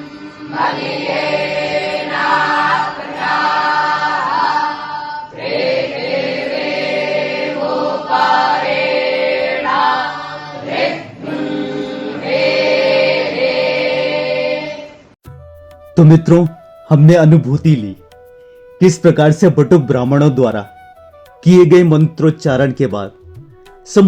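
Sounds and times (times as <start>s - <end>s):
young people chanting in unison: 0.4s - 15.0s.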